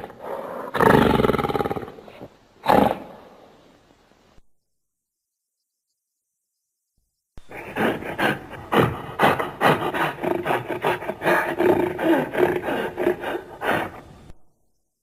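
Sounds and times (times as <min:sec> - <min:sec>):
person growling and grunting: 0:07.5 - 0:13.9.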